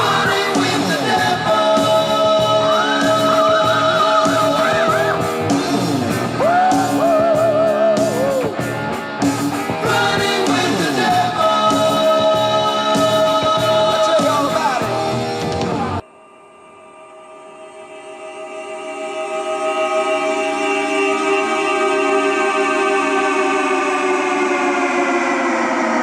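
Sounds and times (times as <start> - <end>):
singer holding long vibrato notes: 0.0 - 8.6, 9.7 - 15.1, 15.8 - 26.0
steady beat: 0.0 - 16.0
guitar: 0.0 - 16.1.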